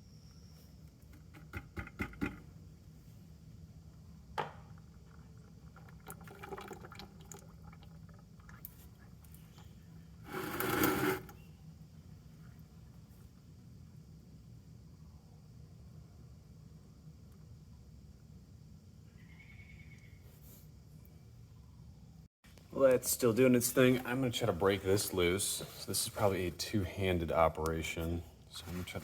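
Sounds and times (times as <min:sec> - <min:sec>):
oil pouring into bucket: 0:04.7 - 0:08.9, 0:10.3 - 0:11.3.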